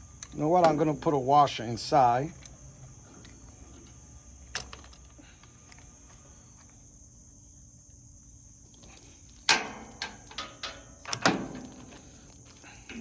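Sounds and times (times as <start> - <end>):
metal hardware clattering: 9.0 - 13.0.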